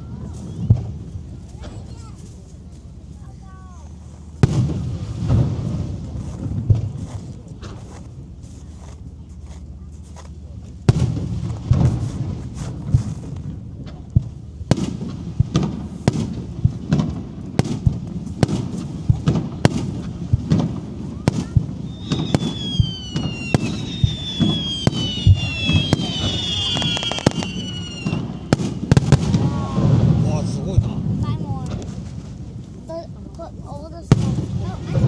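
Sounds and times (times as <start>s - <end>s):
whistling fireworks: 0.0s - 2.6s, 4.1s - 7.2s, 10.9s - 32.5s, 34.1s - 35.0s
fireworks bangs: 0.0s - 3.2s, 4.2s - 8.2s, 10.9s - 32.8s, 34.1s - 35.0s
low rumbling reverberation: 10.6s - 32.9s.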